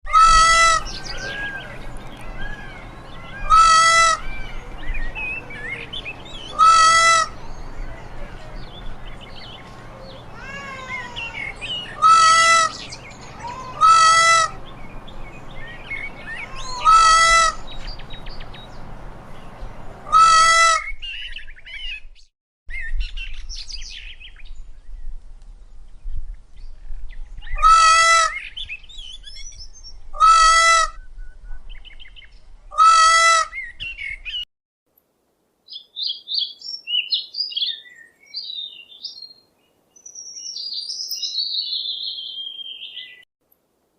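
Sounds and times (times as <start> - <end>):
peacock calling: 0.1 - 22.0, 27.5 - 28.6, 30.2 - 31.0, 32.7 - 33.7
gliding bird calls: 0.2 - 21.8
small birds chirping: 0.7 - 20.2, 35.7 - 43.3.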